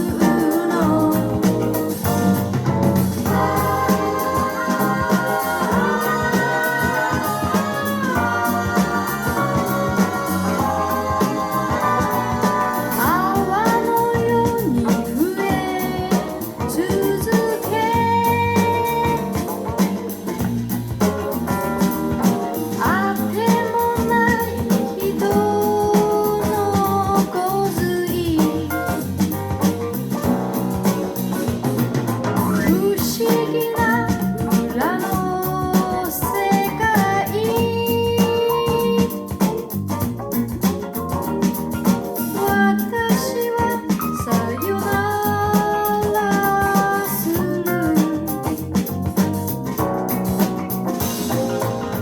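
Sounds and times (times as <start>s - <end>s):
woman singing: 0.0s - 2.4s, 3.2s - 20.0s, 22.6s - 29.2s, 32.6s - 39.8s, 42.1s - 49.3s
pop song over speakers: 0.0s - 52.0s.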